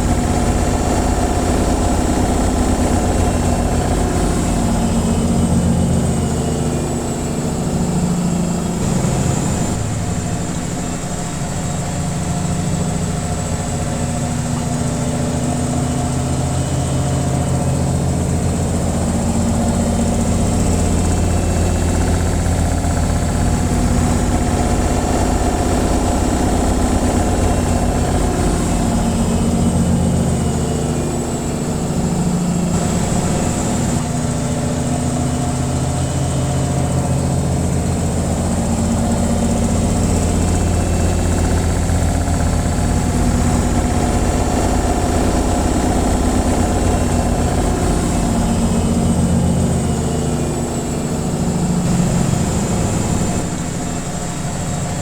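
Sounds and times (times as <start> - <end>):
washing machine spinning: 0.0 - 55.0.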